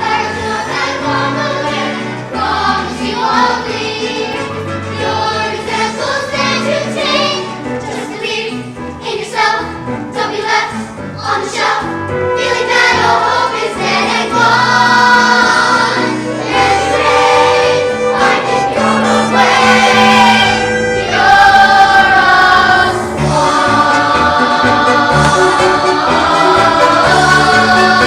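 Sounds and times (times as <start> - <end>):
instrumental accompaniment: 0.0 - 28.0
cast singing in chorus: 12.5 - 28.0.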